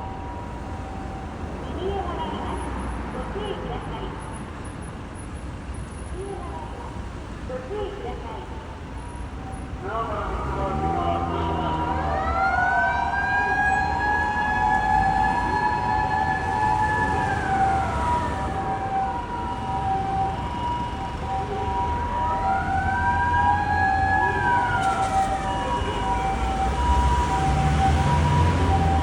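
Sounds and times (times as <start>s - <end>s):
two-tone ambulance siren: 0.0s - 2.8s, 9.4s - 29.0s
low traffic rumble: 0.0s - 29.0s
police siren wailing: 9.5s - 29.0s.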